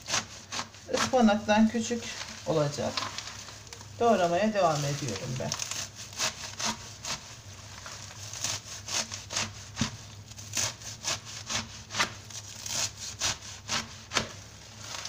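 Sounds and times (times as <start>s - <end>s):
knife chopping greens: 0.0s - 1.4s, 4.7s - 7.4s, 8.0s - 14.4s.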